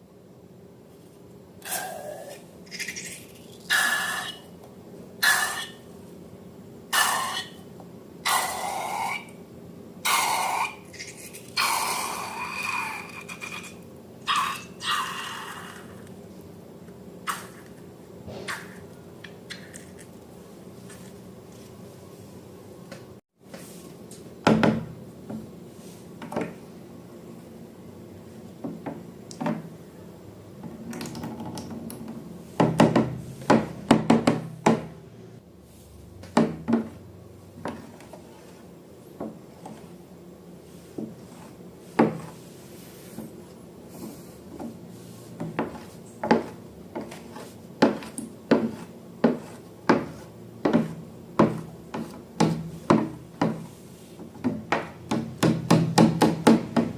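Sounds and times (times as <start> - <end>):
soft rubbing: 40.6 - 51.0.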